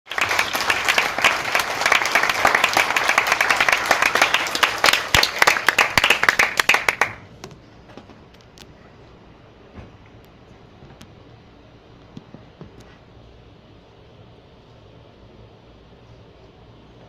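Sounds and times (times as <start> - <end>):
audience applauding: 0.0 - 7.3.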